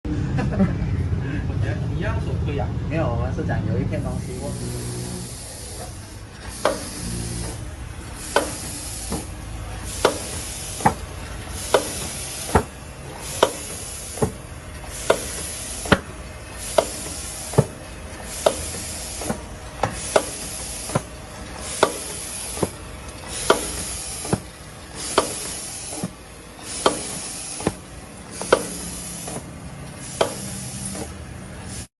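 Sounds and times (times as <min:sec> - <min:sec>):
machine clicking: 0:05.3 - 0:31.2.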